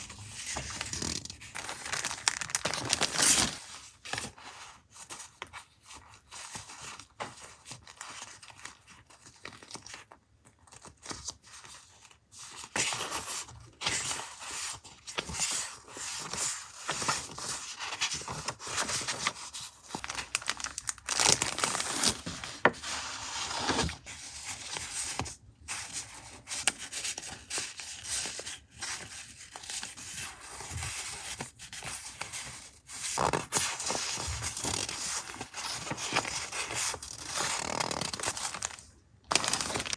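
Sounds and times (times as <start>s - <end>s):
paper rustling and tearing: 0.0s - 4.6s, 12.6s - 25.2s, 33.1s - 39.9s.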